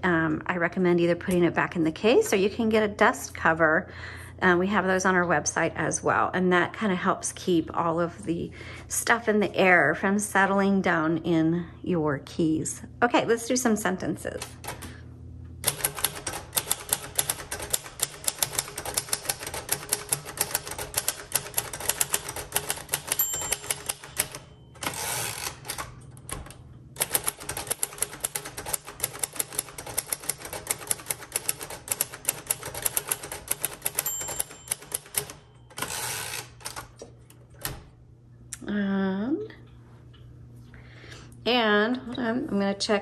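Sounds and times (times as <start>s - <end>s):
typewriter carriage return sweep: 15.6s - 37.0s
typewriter keys clacking: 15.6s - 37.0s
typewriter margin bell ding: 22.6s - 25.8s, 33.6s - 36.4s.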